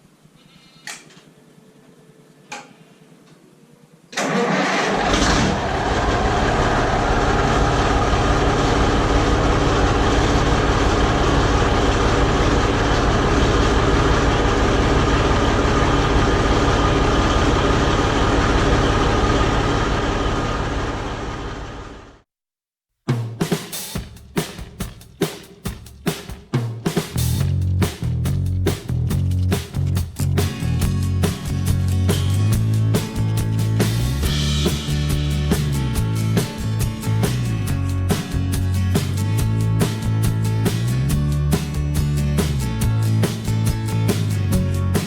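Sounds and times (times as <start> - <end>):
diesel engine cranking and running: 4.2 - 22.2.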